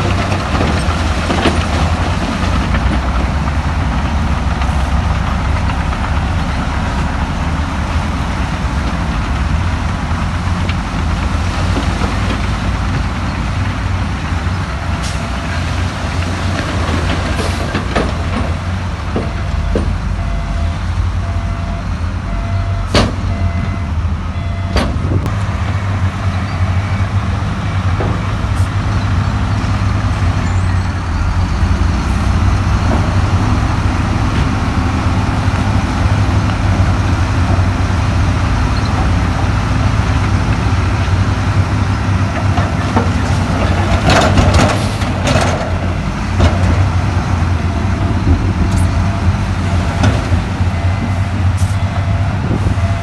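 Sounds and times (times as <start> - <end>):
diesel machinery running: 0.0 - 53.0.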